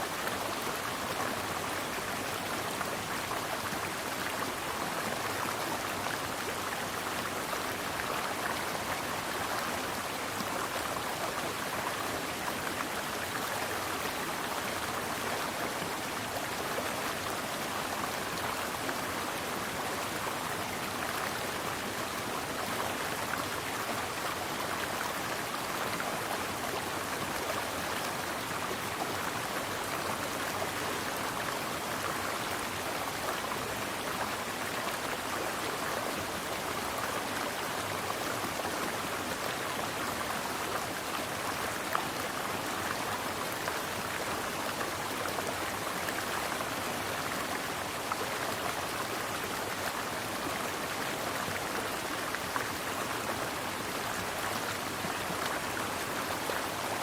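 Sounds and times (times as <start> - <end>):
stream flowing: 0.0 - 57.0.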